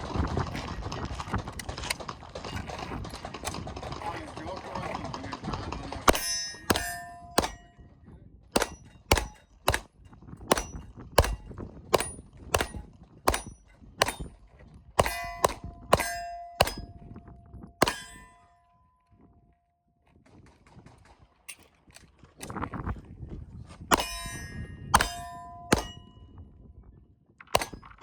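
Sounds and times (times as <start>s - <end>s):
pistol shots: 6.1s - 7.7s, 8.6s - 14.4s, 15.0s - 17.0s, 17.8s - 18.3s, 23.9s - 26.1s, 27.5s - 28.0s
steel target ringing: 6.1s - 7.8s, 8.6s - 9.8s, 15.0s - 17.2s, 17.8s - 18.6s, 23.9s - 26.2s.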